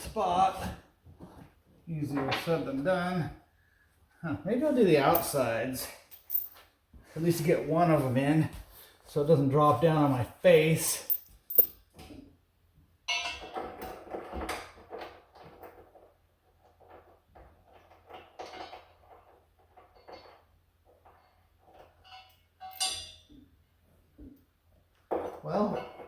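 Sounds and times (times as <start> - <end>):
metal clinks and rattles: 5.1 - 6.6, 10.9 - 11.9, 17.7 - 23.4.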